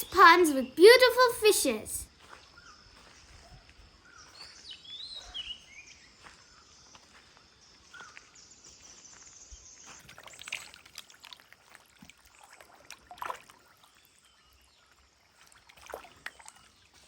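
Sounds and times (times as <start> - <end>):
water splashing and trickling: 9.8 - 17.0.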